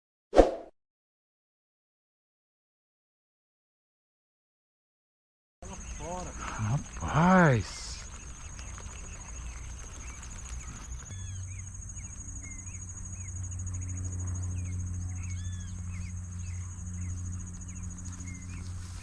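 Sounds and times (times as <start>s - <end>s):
low steady hum: 5.7s - 19.0s.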